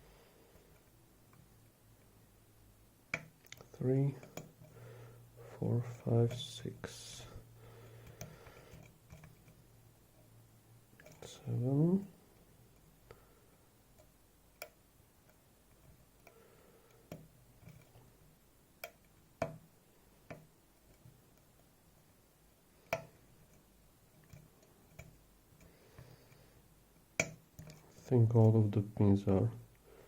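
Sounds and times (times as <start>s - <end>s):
lock pick clicking on pins: 27.1s - 27.8s.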